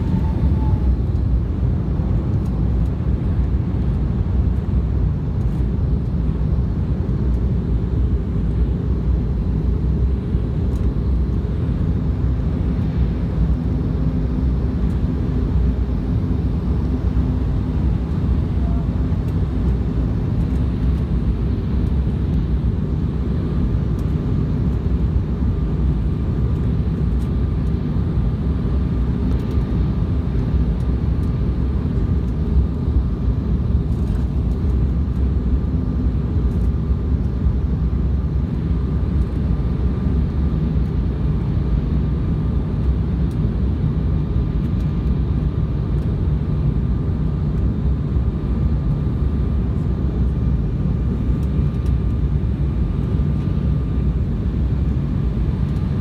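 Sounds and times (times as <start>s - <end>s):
faint steady whine: 0.0s - 2.6s, 8.0s - 35.3s, 35.9s - 56.0s
airliner engines roaring: 0.0s - 56.0s.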